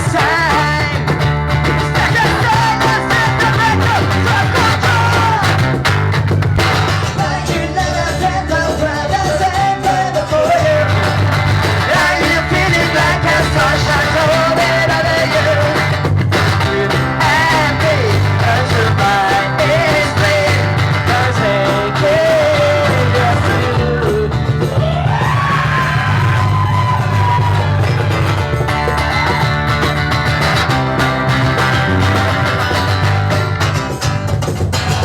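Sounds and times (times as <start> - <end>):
electric guitar melody: 0.0 - 8.4, 27.1 - 35.0
live rock band playing: 0.0 - 35.0.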